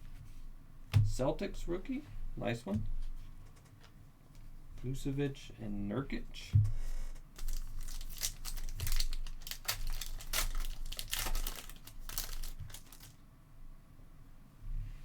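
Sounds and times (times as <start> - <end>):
trading cards being shuffled: 7.1 - 13.2.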